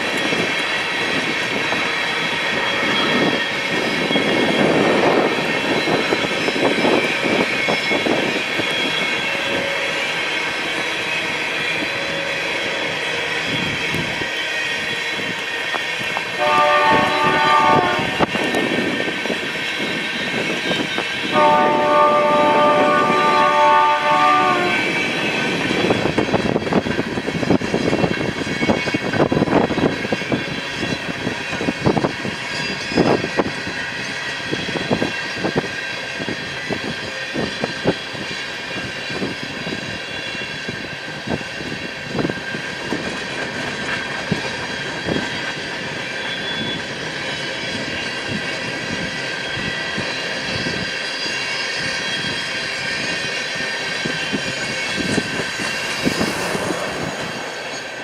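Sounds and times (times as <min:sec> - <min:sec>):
train wheels clicking over rail joints: 0:00.0 - 0:21.5, 0:24.8 - 0:58.0
high-pitched wheel squeal: 0:00.1 - 0:27.0, 0:44.4 - 0:58.0.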